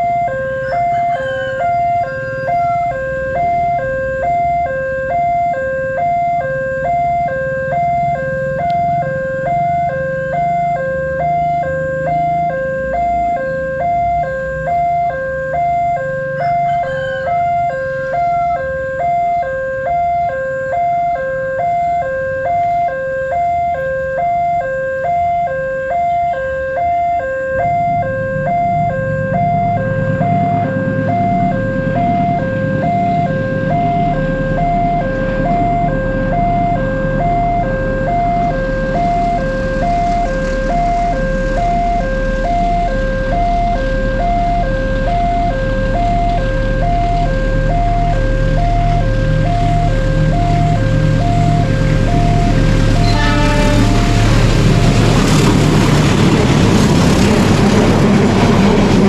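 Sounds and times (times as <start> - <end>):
level-crossing alarm two-tone: 0.0 - 54.8
train rumble and engine hum: 0.0 - 59.0.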